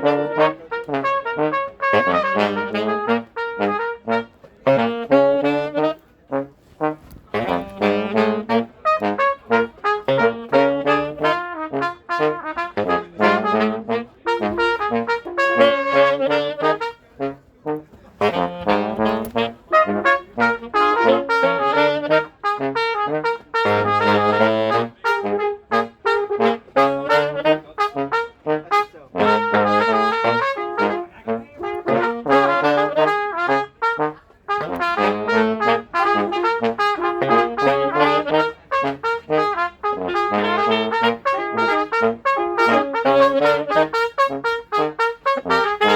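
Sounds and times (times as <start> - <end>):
trumpets and trombones playing: 0.0 - 45.9.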